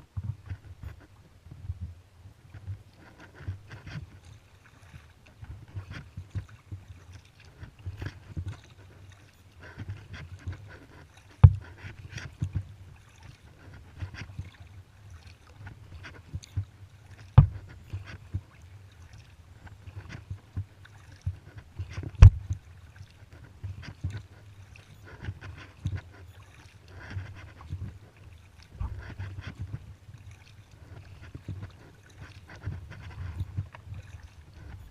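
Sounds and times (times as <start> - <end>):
paddle splashing water: 0.0 - 34.9
low rumble: 28.8 - 29.1.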